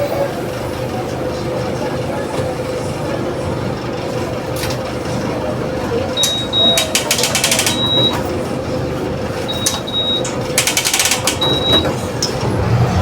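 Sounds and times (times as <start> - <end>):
bus engine running: 0.0 - 13.0
rapid ratcheting clicks: 6.8 - 7.8, 10.6 - 11.4.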